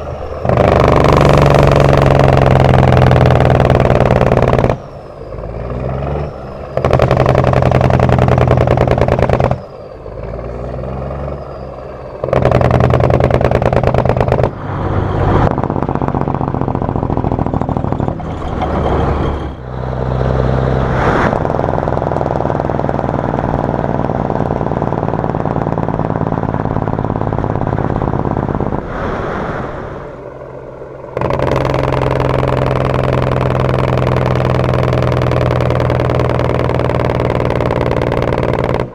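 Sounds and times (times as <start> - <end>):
diesel engine brake exhaust pulses: 0.0 - 20.4, 21.0 - 38.9.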